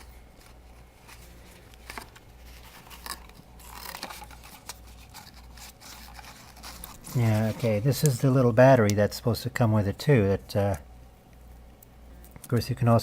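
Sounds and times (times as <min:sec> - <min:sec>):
cardboard packaging rustling: 0:00.0 - 0:08.4.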